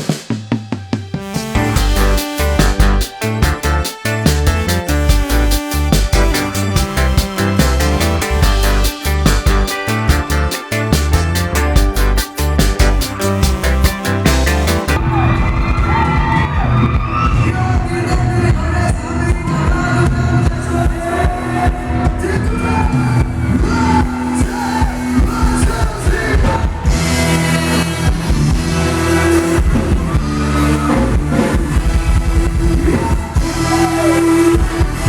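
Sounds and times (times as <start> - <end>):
person singing: 1.2 - 15.0
live band dance music: 1.2 - 15.5.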